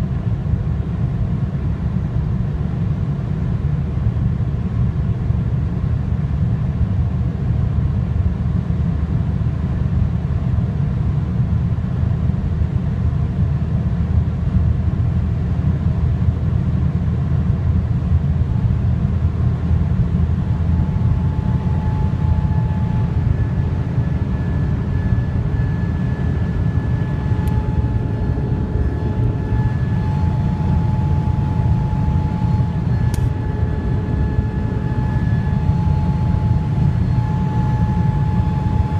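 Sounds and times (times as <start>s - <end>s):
thin high-pitched whine: 20.8s - 38.9s.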